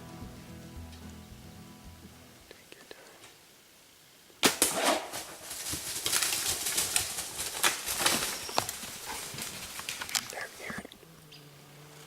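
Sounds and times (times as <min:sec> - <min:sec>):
gunshot: 0:04.4 - 0:05.2
bear crashing through brush: 0:04.4 - 0:10.2.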